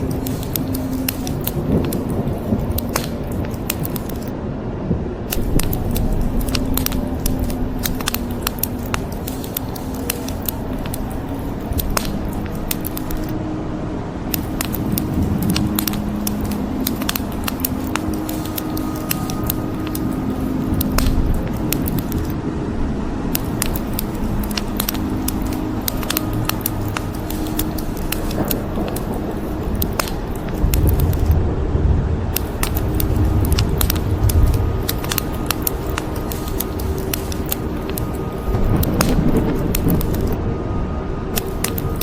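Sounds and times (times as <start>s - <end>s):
rain hiss: 0.0s - 4.3s, 5.3s - 31.4s, 32.2s - 40.4s, 41.3s - 42.0s
wood fire crackling: 0.0s - 4.4s, 5.3s - 31.4s, 32.2s - 40.4s, 41.2s - 42.0s
low rumble: 10.4s - 41.4s.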